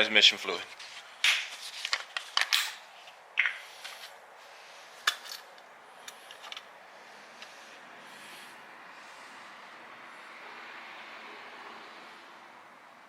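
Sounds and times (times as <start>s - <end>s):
hard objects clicking and knocking: 3.4s - 3.6s.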